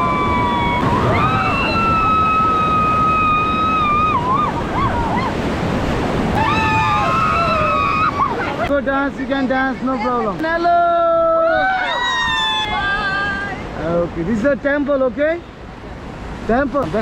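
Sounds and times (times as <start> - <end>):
high-pitched whoops: 0.0 - 5.3, 6.3 - 8.4, 11.2 - 13.5
rushing river water: 0.0 - 17.0.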